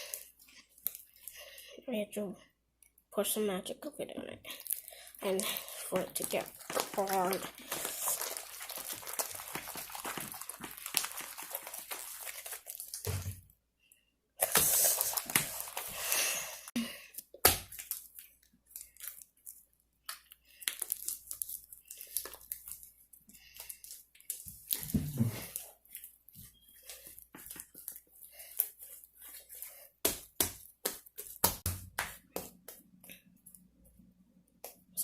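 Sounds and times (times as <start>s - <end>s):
slime crackling and squishing: 4.4s - 13.5s, 14.4s - 16.1s, 17.2s - 33.0s.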